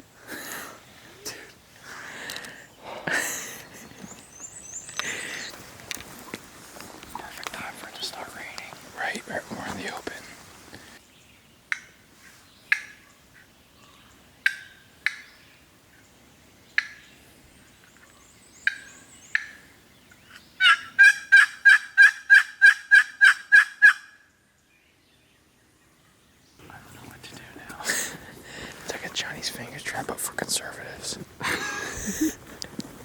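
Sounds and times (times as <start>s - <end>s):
turkey clucking: 20.6s - 24.1s
turkey yelping: 20.6s - 24.1s.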